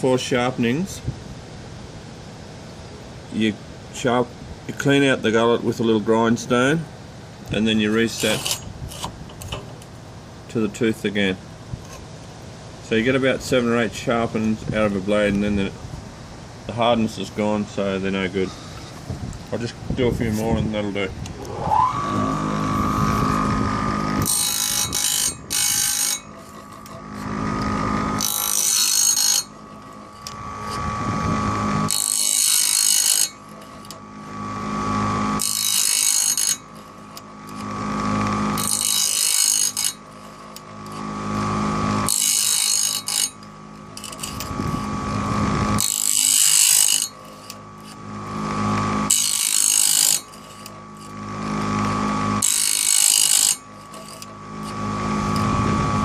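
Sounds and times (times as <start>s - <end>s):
grinding wheel grinding blade teeth: 7.8s - 9.6s, 21.3s - 56.0s
grinding wheel motor humming: 21.2s - 56.0s.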